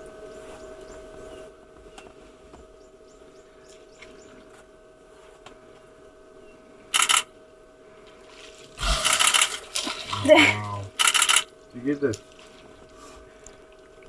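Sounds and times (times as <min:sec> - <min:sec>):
camera shutters firing: 0:07.0 - 0:07.3, 0:08.8 - 0:09.6, 0:11.0 - 0:11.5.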